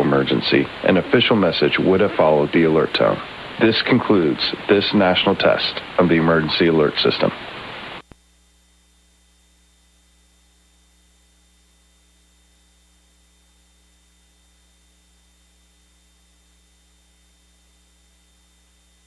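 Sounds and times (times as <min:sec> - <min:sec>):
low hiss: 0:00.0 - 0:08.6
faint electrical hum: 0:00.0 - 0:19.0.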